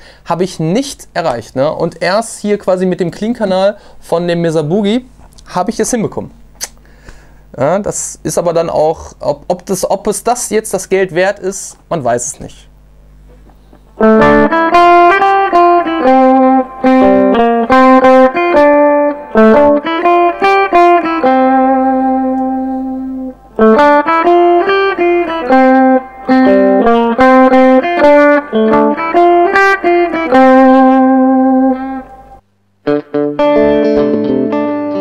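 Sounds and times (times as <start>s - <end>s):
electric guitar notes: 13.1s - 35.0s.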